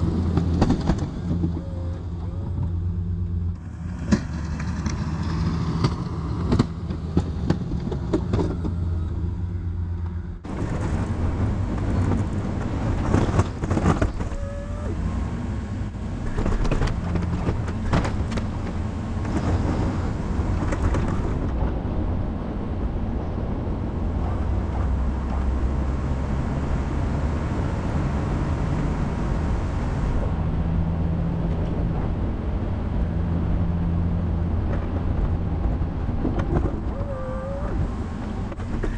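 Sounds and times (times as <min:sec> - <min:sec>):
snow plow knocks and clanks: 0:00.0 - 0:02.8, 0:03.9 - 0:08.9, 0:10.5 - 0:14.7, 0:16.2 - 0:21.9.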